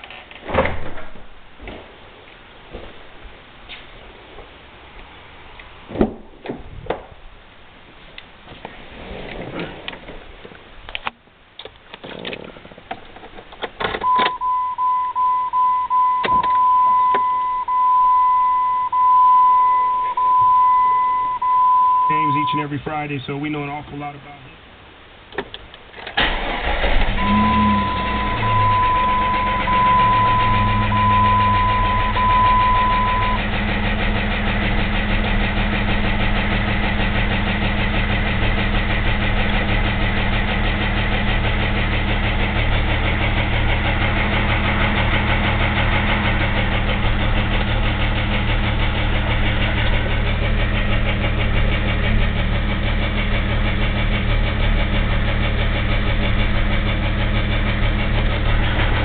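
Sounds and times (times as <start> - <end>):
electronic beep: 14.0 - 22.7, 27.2 - 33.4
car engine idling with knocking: 26.3 - 59.0.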